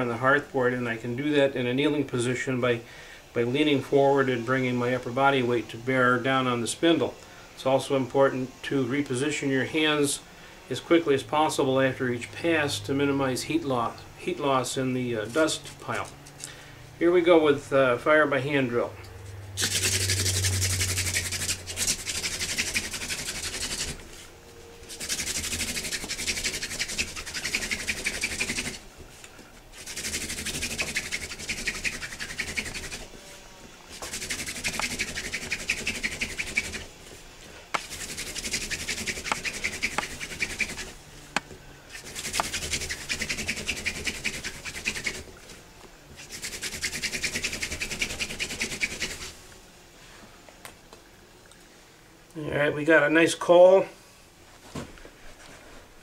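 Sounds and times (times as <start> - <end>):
hand drill rubbing hiss: 19.5 - 41.0, 41.9 - 45.3, 46.2 - 49.4.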